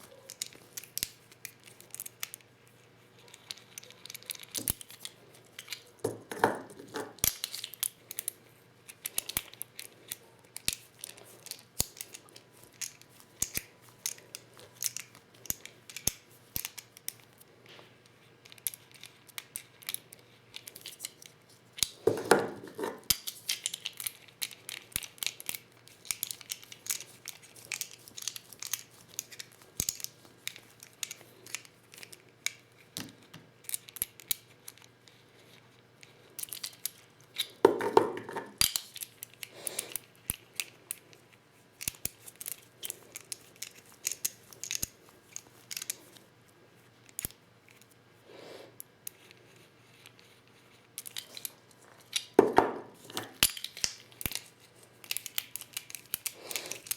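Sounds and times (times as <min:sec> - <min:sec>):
small clicks and taps of shells: 0:00.0 - 0:46.3, 0:47.0 - 0:48.0, 0:48.8 - 0:56.9.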